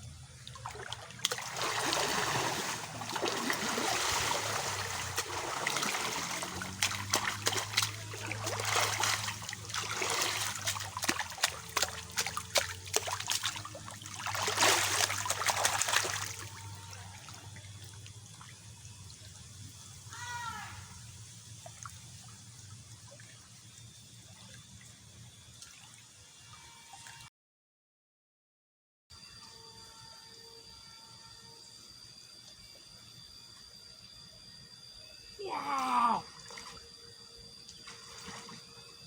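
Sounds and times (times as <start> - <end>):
water splashing and trickling: 0.2 - 20.1, 21.0 - 27.2, 36.1 - 39.0
rush of water: 0.7 - 16.5.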